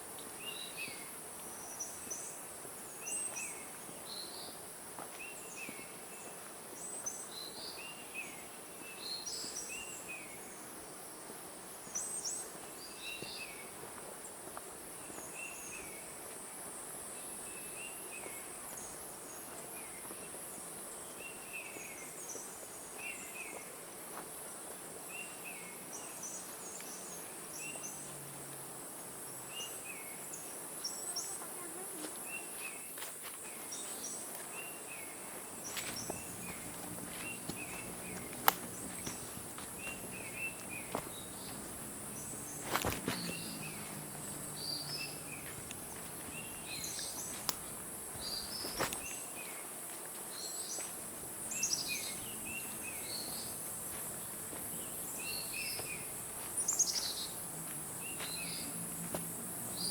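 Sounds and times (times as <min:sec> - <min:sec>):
birds chirping: 0:29.2 - 0:59.9.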